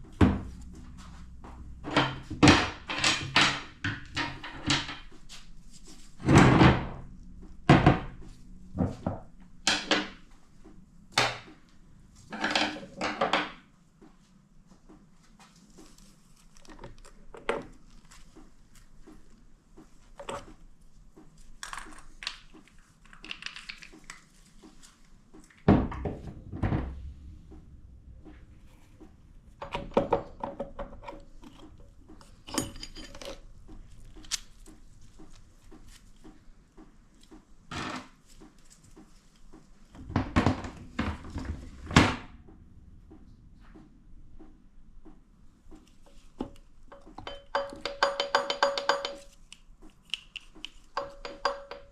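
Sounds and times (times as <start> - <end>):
metal parts and tools clinking: 29.6 - 33.5, 46.4 - 49.5, 50.7 - 51.9.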